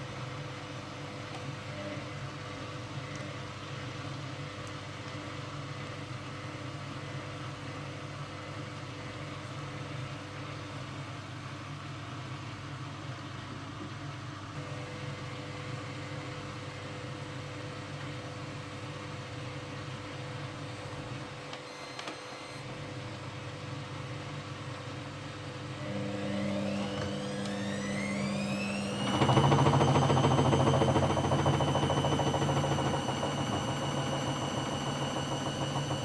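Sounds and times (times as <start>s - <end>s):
washing machine motor whine: 19.3s - 36.0s.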